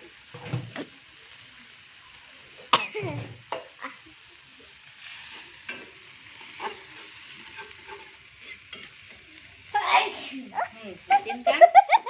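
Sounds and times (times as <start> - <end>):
food sizzling in a frying pan: 0.0 - 12.0
utensil scraping a pan: 5.2 - 9.2.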